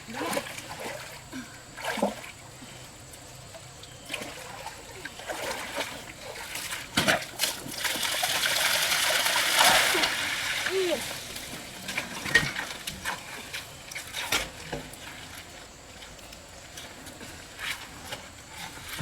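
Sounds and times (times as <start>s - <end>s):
water splashing in pond: 0.0s - 2.8s, 4.0s - 15.2s.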